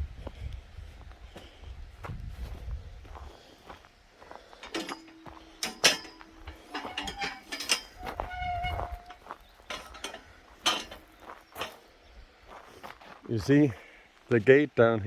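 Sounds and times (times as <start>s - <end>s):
metal clanks and knocks: 4.5s - 12.0s
drawn-out gate squeaks: 4.6s - 11.8s
metal gate creaking on hinges: 4.6s - 12.0s.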